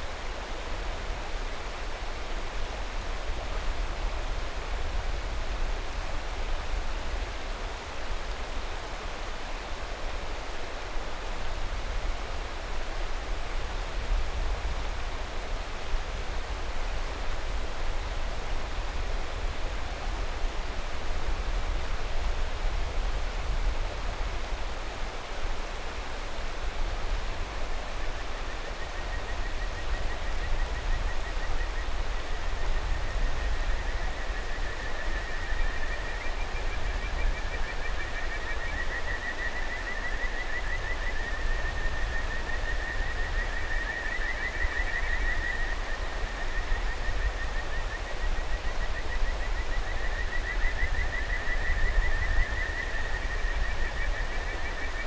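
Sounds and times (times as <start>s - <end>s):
frogs trilling calls: 34.1s - 55.0s.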